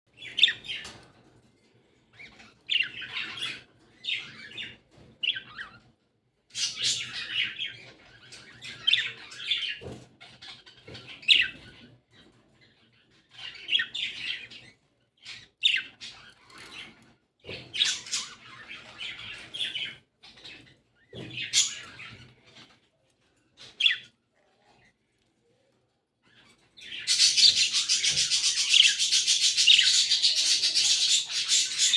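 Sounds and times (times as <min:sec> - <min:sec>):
budgerigars chattering and chirping: 0:06.6 - 0:11.9, 0:21.2 - 0:22.2, 0:26.8 - 0:31.9.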